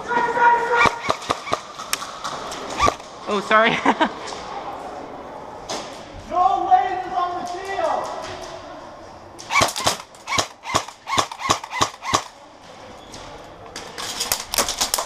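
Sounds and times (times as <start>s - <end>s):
airsoft guns firing: 0.7s - 3.1s, 9.4s - 12.4s.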